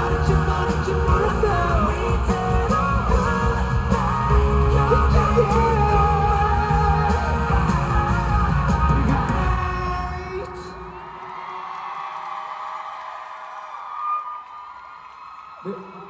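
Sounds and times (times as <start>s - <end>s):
live rock band: 0.0s - 11.0s
man singing: 0.0s - 11.0s.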